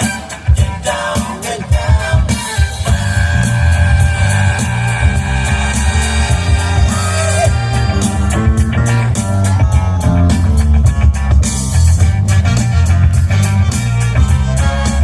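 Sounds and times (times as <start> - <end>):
loud rock music: 0.0 - 15.0.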